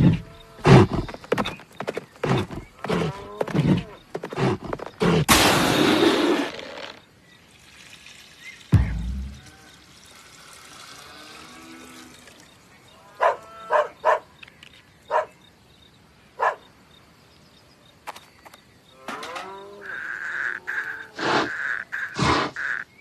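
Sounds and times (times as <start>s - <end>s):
animal calls: 13.0s - 14.2s, 19.0s - 22.9s.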